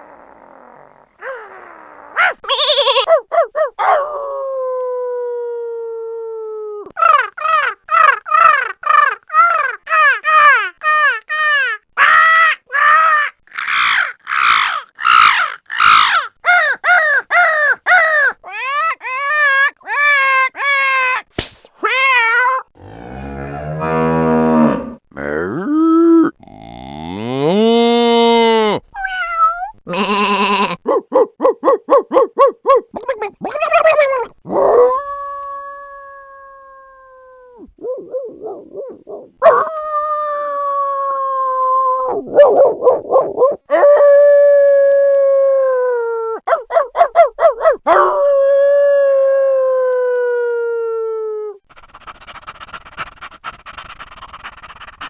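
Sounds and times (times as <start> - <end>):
animal calls: 1.2 - 3.2.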